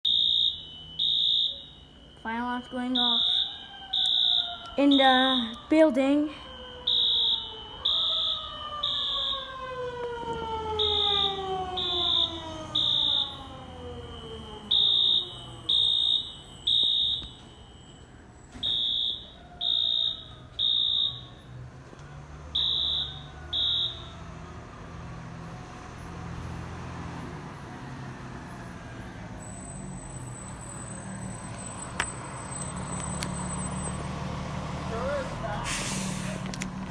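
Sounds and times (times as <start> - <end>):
fire alarm beeping: 0.0 - 21.7, 22.5 - 24.4
siren winding down: 0.1 - 36.2.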